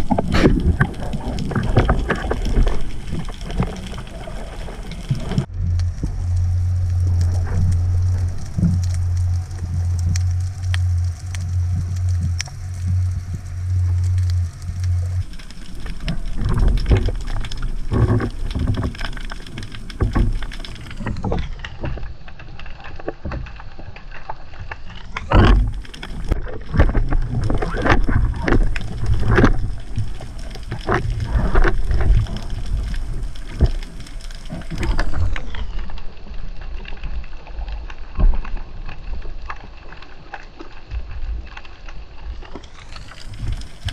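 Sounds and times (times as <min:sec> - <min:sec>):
rushing water: 0:00.0 - 0:43.9
underwater crackling: 0:00.0 - 0:43.9
steady low hum: 0:05.2 - 0:21.2.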